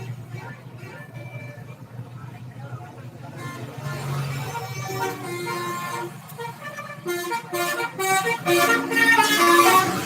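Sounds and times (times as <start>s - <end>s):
bus engine running: 0.0s - 10.0s
multi-tone bus horn tune: 0.8s - 1.9s, 3.2s - 10.0s.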